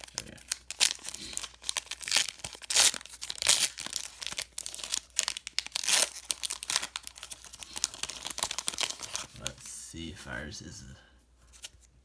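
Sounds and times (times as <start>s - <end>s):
plastic wrapper crinkling and tearing: 0.0s - 9.6s.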